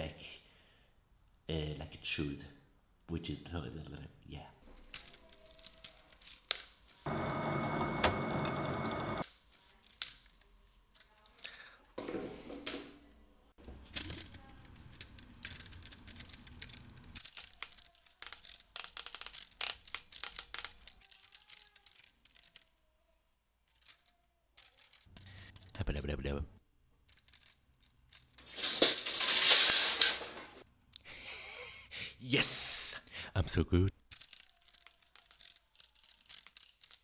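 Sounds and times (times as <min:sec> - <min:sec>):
machine noise with thin whine: 0:07.1 - 0:09.2
tearing-like rustles: 0:23.7 - 0:25.8, 0:27.2 - 0:30.6, 0:34.1 - 0:37.0.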